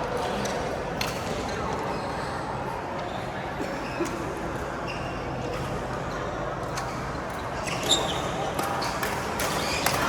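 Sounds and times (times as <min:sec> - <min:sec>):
shoe squeaks: 0:07.6 - 0:08.4, 0:09.5 - 0:10.0.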